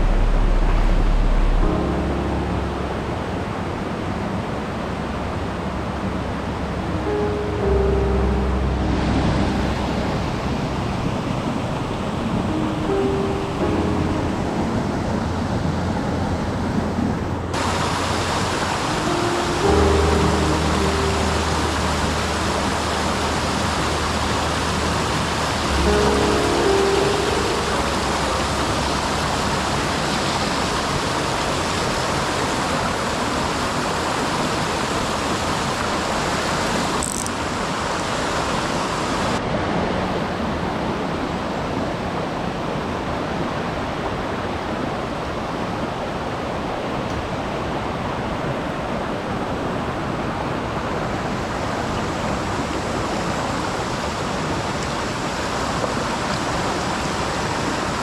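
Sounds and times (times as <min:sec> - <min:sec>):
mountain stream rushing: 0:00.0 - 0:58.0.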